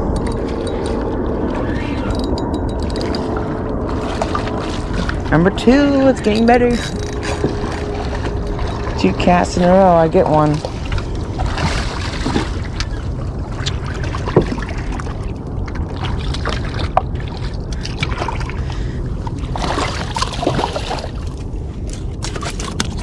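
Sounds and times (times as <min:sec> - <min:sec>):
water sloshing and trickling: 0:00.0 - 0:23.0
water splashing: 0:00.0 - 0:23.0
wind rumble on microphone: 0:00.0 - 0:23.0.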